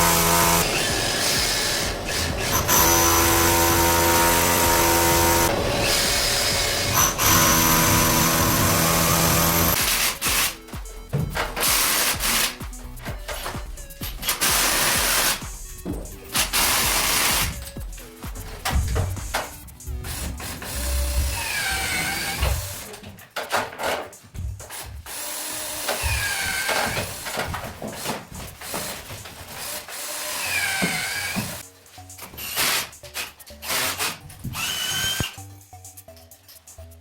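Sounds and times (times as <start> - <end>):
power drill whining: 0.0 - 10.7, 11.3 - 12.6, 14.1 - 15.4, 16.3 - 17.7, 20.1 - 23.0, 24.8 - 31.6, 33.6 - 35.4
background music: 0.0 - 37.0.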